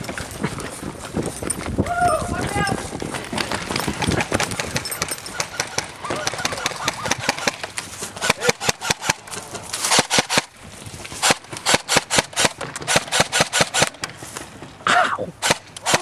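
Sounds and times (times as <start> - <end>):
clothing and gear rustling: 0.0 - 8.3
running footsteps: 0.0 - 14.9.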